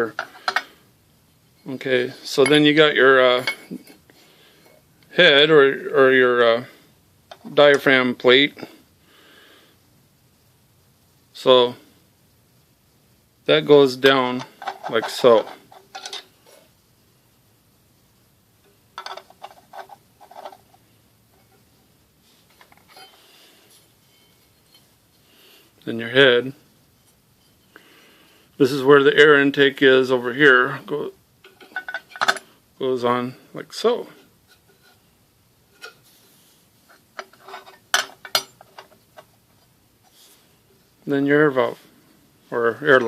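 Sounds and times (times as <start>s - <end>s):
metal parts knocking and clinking: 0.1s - 0.7s, 14.4s - 16.3s, 19.0s - 20.6s, 31.4s - 32.5s, 37.2s - 39.3s
small metal clicks and knocks: 14.4s - 16.3s, 19.0s - 20.6s.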